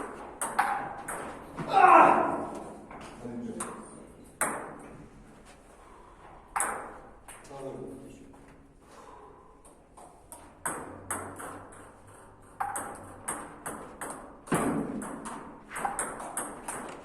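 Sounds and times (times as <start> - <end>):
table tennis ball hits: 0.0 - 2.7, 3.6 - 5.0, 6.5 - 7.4, 9.6 - 17.0.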